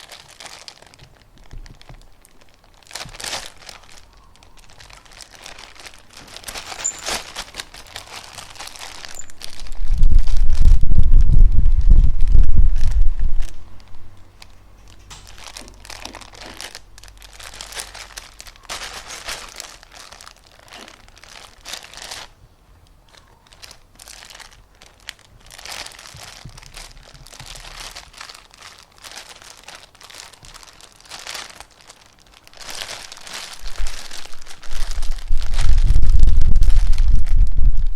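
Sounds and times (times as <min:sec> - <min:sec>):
crinkling and crumpling: 0:00.0 - 0:37.9
loud low rumble: 0:08.2 - 0:14.2, 0:33.7 - 0:37.9.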